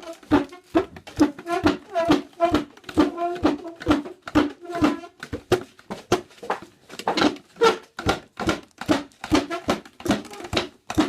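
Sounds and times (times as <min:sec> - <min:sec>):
chair legs scraping floor: 0:00.0 - 0:08.0.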